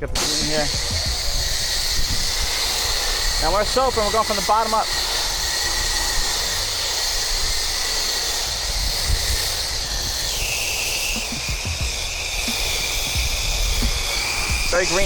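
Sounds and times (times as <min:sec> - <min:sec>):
pressure washer spraying: 0:00.0 - 0:15.0.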